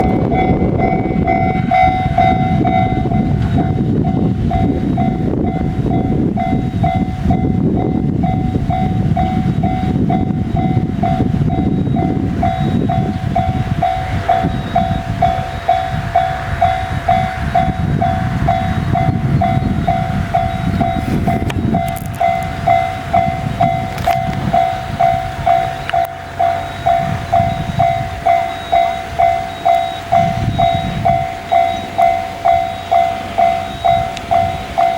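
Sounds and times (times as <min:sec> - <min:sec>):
electric train passing: 0:00.0 - 0:34.9
level crossing warning bell: 0:00.0 - 0:34.9.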